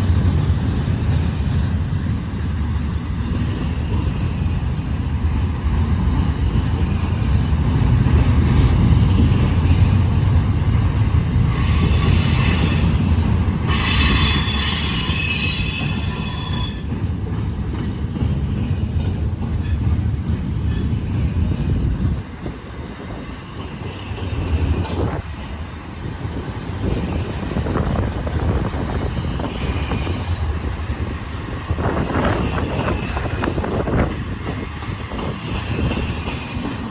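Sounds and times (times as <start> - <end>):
train wheels rumbling on rail: 0.0 - 36.9
train wheels squealing: 11.5 - 17.2, 28.8 - 30.4.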